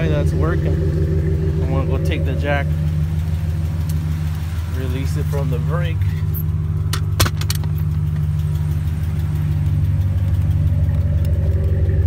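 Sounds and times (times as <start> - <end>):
truck engine idling: 0.0 - 12.0
metallic clicks and clatter: 6.0 - 12.0.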